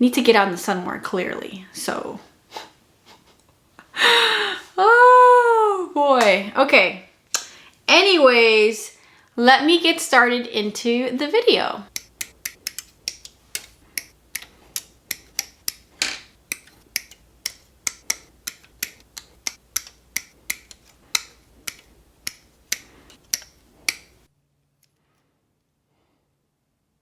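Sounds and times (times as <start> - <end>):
plastic model parts clicking: 11.9 - 24.2.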